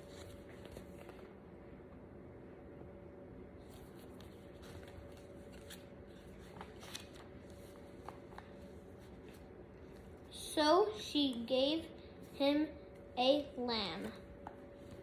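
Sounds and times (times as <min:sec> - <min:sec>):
paper page rustling: 0:00.0 - 0:01.4, 0:03.6 - 0:10.2.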